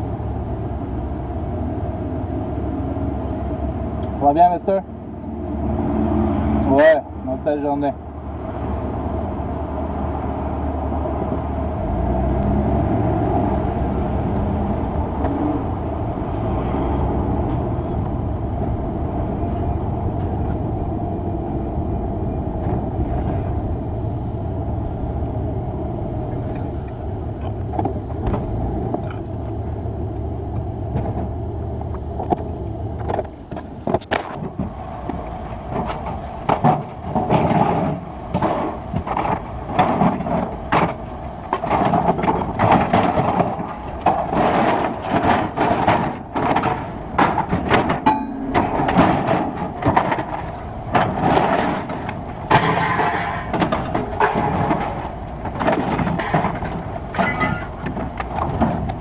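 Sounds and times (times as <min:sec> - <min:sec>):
vehicle engine rumbling: 0:00.0 - 0:59.0
sharp knocks and clanks: 0:32.2 - 0:59.0.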